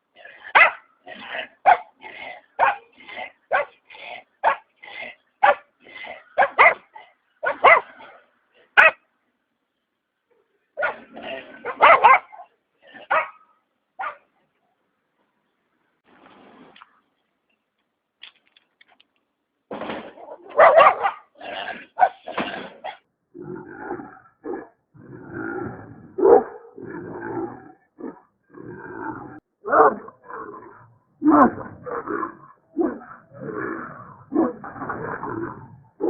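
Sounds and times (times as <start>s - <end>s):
dog barking: 0.5s - 0.9s, 1.6s - 2.0s, 2.6s - 2.9s, 3.5s - 3.8s, 4.4s - 4.7s, 5.4s - 5.7s, 6.3s - 8.2s, 8.8s - 9.0s, 10.8s - 14.3s, 20.2s - 21.3s, 22.0s - 22.3s, 26.2s - 26.8s, 29.6s - 30.1s.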